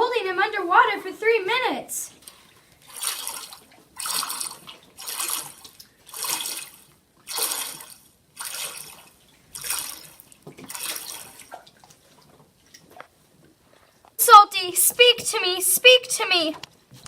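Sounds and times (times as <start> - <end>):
water splashing in a tub: 2.1 - 13.6.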